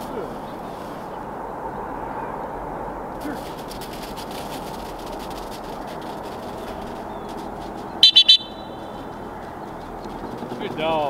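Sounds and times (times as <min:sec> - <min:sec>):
high-pitched dog whistle blasts: 0:08.0 - 0:08.8.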